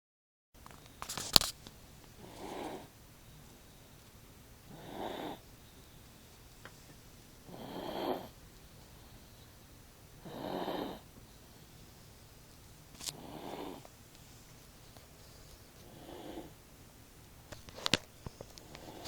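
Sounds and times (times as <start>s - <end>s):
person snoring: 2.2s - 2.9s, 4.7s - 5.4s, 7.5s - 8.4s, 10.2s - 11.1s, 13.1s - 13.9s, 15.9s - 16.6s.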